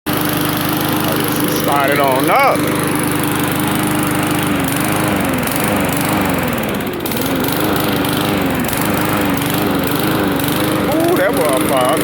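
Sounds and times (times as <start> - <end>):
lawn mower engine running unevenly: 0.1 - 12.0.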